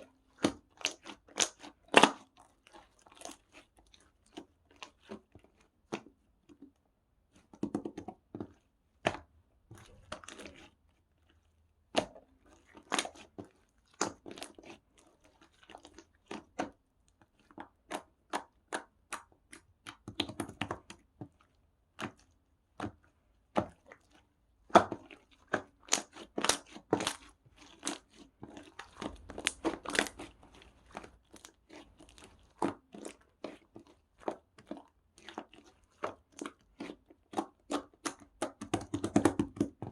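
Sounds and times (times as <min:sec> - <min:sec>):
slime clicking and popping: 0:27.8 - 0:31.4.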